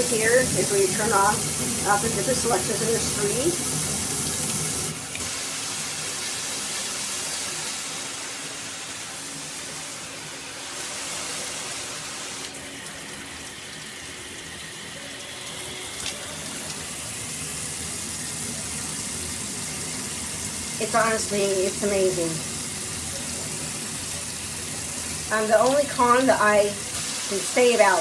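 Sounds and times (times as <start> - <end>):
water spraying from shower head: 0.0 - 10.0, 15.9 - 28.0.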